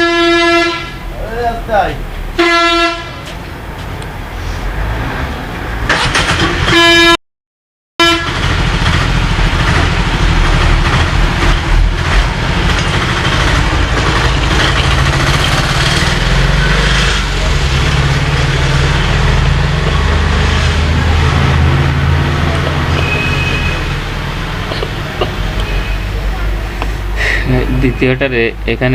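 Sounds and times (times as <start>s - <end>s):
vehicle horn: 0.0s - 1.1s, 2.4s - 3.2s, 6.7s - 7.2s, 8.0s - 8.4s, 22.9s - 24.0s
low engine rumble: 8.2s - 28.9s.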